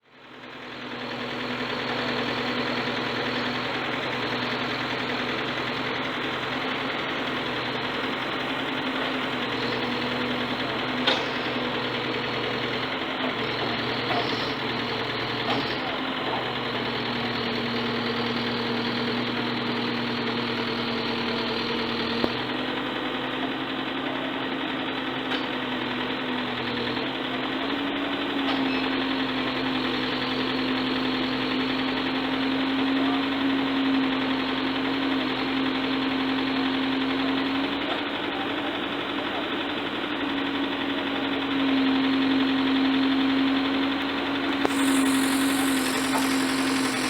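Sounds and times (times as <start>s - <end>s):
excavator engine running: 44.5s - 47.0s.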